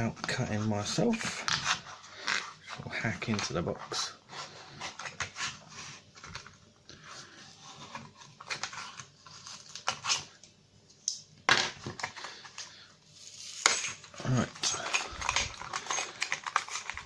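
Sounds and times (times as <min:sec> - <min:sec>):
knife cutting plastic packaging: 0:08.4 - 0:10.4, 0:14.2 - 0:17.0.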